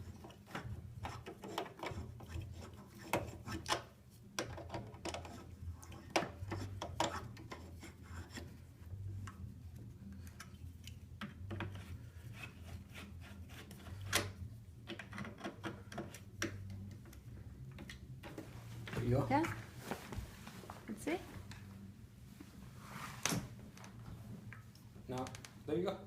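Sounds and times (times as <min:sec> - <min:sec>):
rubbing on office chair: 0:11.7 - 0:14.1, 0:22.4 - 0:23.2.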